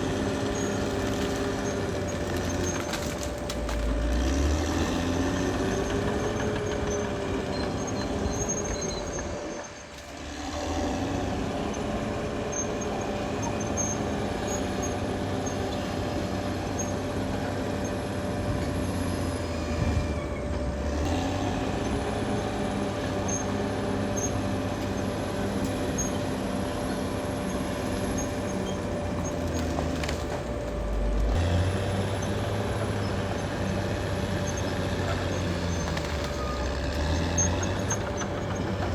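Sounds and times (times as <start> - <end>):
bulldozer diesel engine working: 0.0 - 38.9.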